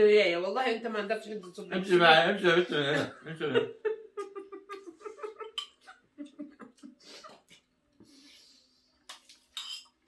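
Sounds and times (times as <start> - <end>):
soft breath: 8.0 - 9.0.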